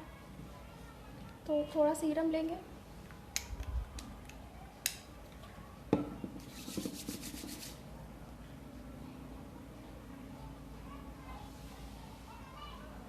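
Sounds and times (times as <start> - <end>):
quick rubbing: 6.4 - 7.8.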